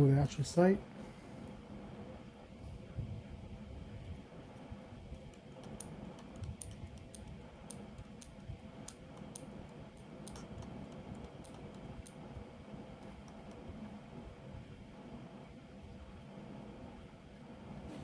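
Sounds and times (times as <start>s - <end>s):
steady low rumble: 1.4s - 16.2s
keyboard and mouse clicks: 5.1s - 12.2s.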